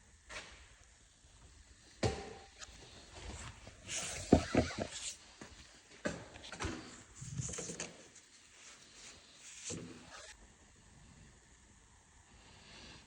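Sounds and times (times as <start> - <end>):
plastic parts knocking and scraping: 4.0 - 5.2.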